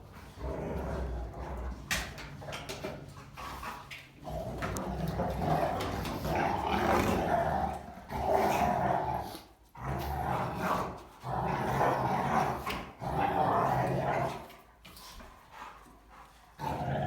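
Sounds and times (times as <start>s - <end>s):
dogs growling: 0.0s - 17.0s.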